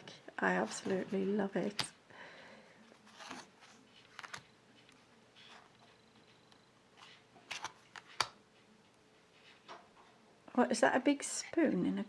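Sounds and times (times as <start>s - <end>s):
cards rustling and sliding: 3.0s - 5.6s, 7.0s - 8.4s.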